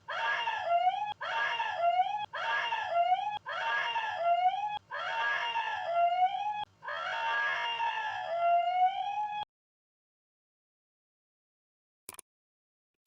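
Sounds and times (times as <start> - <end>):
high wailing scream-like cry: 0.0 - 9.4.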